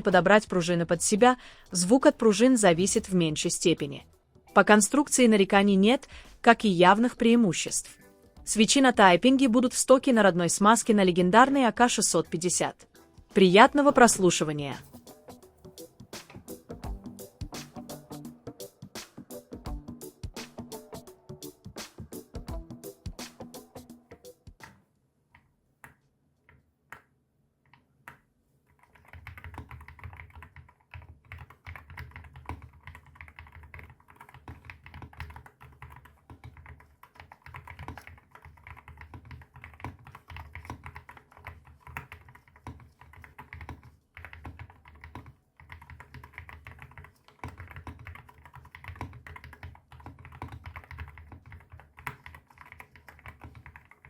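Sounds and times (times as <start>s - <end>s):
mechanical keyboard typing: 28.7s - 54.0s.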